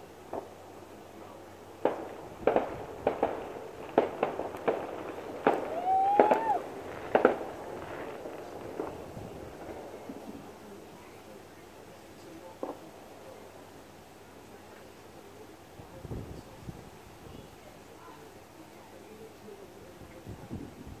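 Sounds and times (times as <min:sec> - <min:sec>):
fireworks bangs: 0:00.0 - 0:11.3
rising firework whistle: 0:05.5 - 0:07.4.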